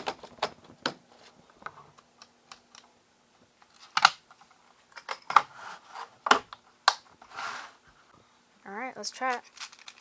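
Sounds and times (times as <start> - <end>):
small hard objects clicking: 9.3 - 10.0.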